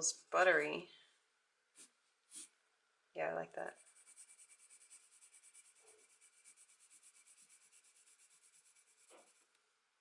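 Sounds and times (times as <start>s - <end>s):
pencil shading on paper: 3.7s - 9.6s.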